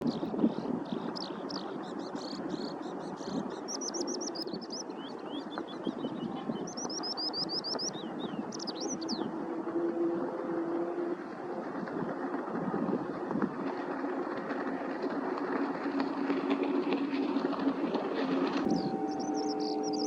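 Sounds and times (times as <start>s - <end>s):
skylark singing high chirps: 0.0s - 9.3s, 18.7s - 20.0s.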